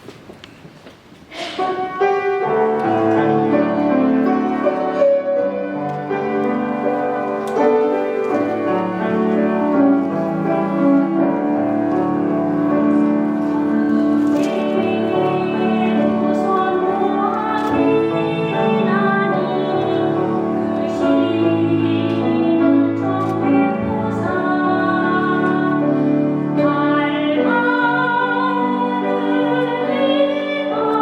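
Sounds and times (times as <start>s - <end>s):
piano playing hymn chords: 1.6s - 31.0s.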